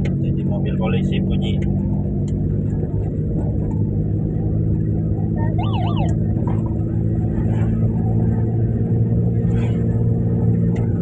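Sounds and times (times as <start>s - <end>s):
car engine running: 0.0s - 11.0s
electronic siren warble: 5.4s - 6.2s.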